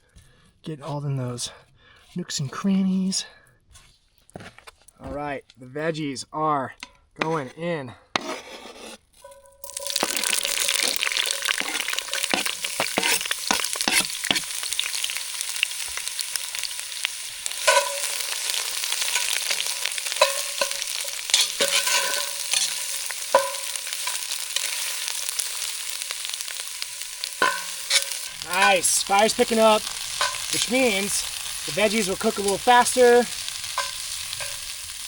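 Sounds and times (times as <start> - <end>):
utensil scraping a pan: 8.2 - 35.0
vegetables sizzling in oil: 9.2 - 35.0.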